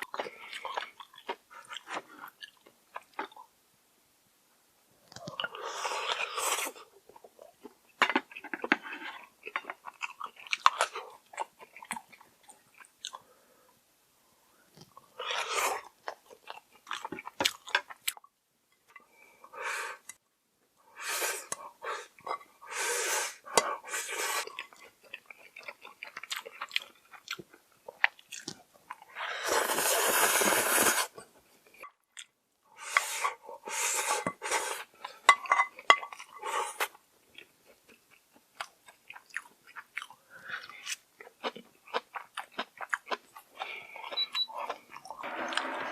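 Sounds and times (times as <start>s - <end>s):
person chewing food: 0.0s - 3.5s, 5.1s - 13.4s, 14.7s - 20.2s, 23.5s - 45.9s
noodles being slurped: 29.4s - 31.2s.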